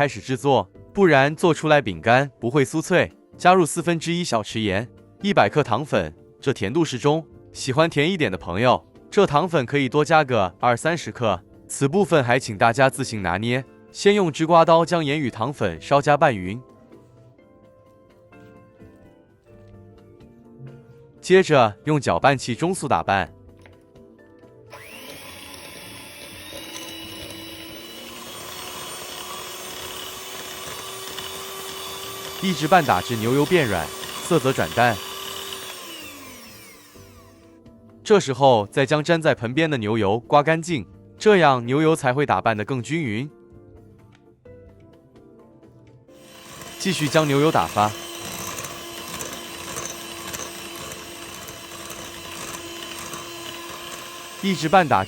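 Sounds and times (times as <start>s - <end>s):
electric mixer whirring: 24.7s - 37.6s, 46.2s - 55.0s.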